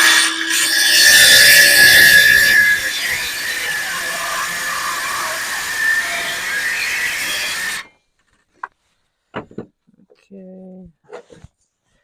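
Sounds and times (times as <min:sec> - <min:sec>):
power saw cutting wood: 0:00.0 - 0:07.9.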